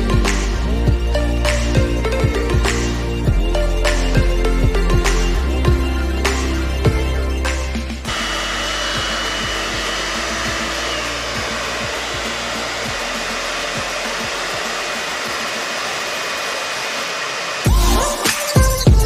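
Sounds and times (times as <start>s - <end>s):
music: 0.0s - 16.2s, 17.6s - 19.0s
vacuum cleaner running: 8.0s - 18.5s.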